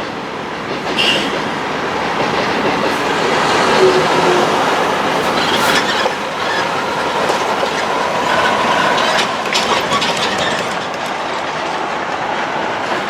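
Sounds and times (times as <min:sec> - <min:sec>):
train wheels rumbling on rail: 0:00.0 - 0:13.0
faint wheel squeal: 0:00.8 - 0:11.0.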